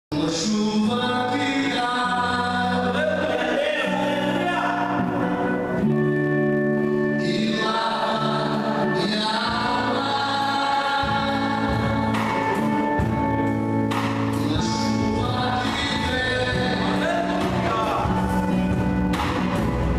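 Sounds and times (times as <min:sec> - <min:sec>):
choir singing gospel song: 0:07.1 - 0:13.4, 0:14.3 - 0:19.8.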